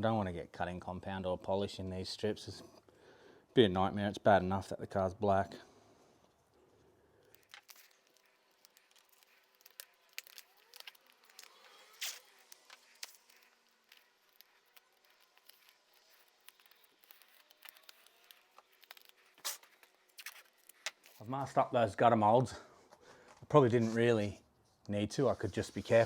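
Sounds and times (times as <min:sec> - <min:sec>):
masking tape crackling and ripping: 0:06.2 - 0:21.7, 0:25.2 - 0:26.0.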